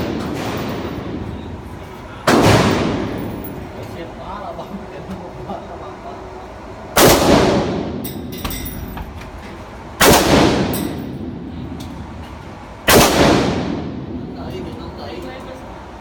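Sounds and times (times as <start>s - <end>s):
rifle shots with echo: 2.3s - 3.4s, 7.0s - 8.0s, 10.0s - 11.2s, 12.9s - 14.2s.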